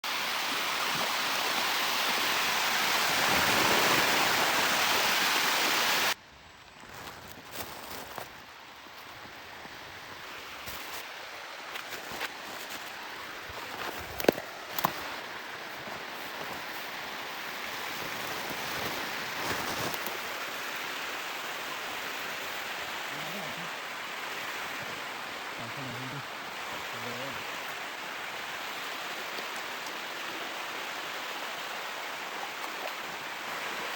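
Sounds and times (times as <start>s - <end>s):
rushing flowing water: 0.0s - 6.2s, 7.8s - 33.9s.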